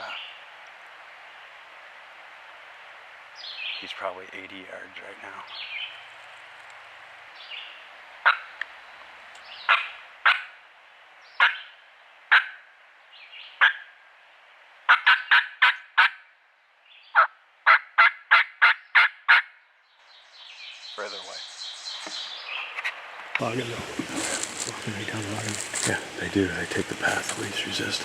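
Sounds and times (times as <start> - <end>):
faint drawn-out turkey calls: 8.2 - 8.7, 9.6 - 10.6, 11.4 - 12.6, 14.9 - 16.2, 17.1 - 19.5, 20.9 - 28.0
turkey clucking: 22.0 - 28.0.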